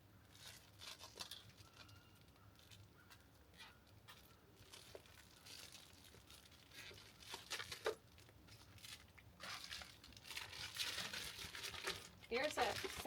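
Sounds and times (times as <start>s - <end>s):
plastic bags crinkling: 0.2s - 13.0s.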